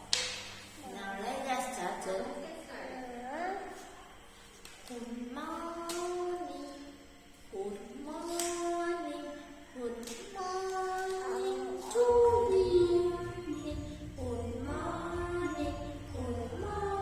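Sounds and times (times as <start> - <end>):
child singing: 4.9 - 17.0.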